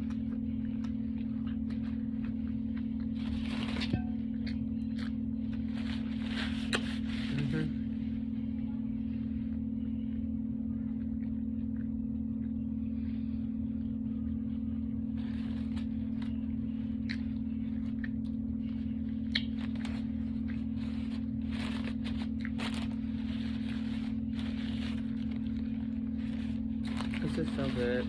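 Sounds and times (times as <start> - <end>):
sandwich bites and chewing: 0.0 - 7.7, 15.2 - 28.0
steady low hum: 0.0 - 28.0.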